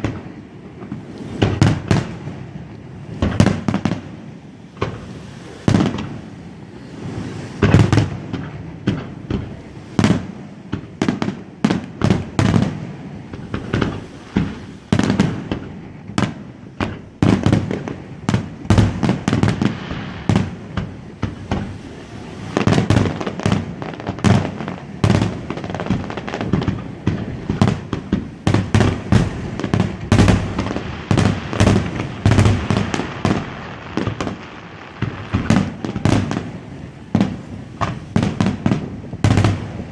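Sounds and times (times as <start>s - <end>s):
deep firework booms: 0.0s - 39.9s
firework shell bursts and crackling: 22.6s - 36.6s.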